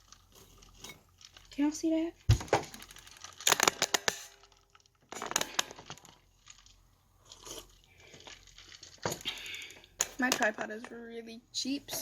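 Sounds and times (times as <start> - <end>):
sharp clicks and crinkling: 0.0 - 11.2.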